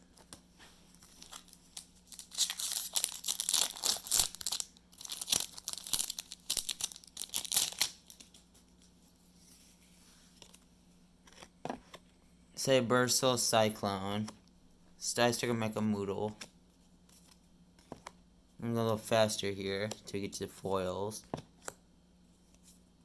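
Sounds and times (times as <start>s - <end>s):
foil wrapper tearing and crinkling: 1.2s - 8.4s.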